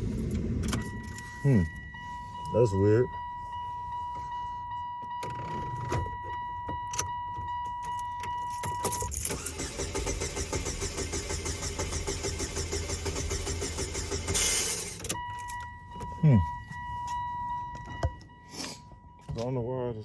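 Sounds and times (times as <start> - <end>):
high electronic warning tone: 0.7 - 9.1, 15.0 - 20.0
starter cranking engine: 9.0 - 15.1.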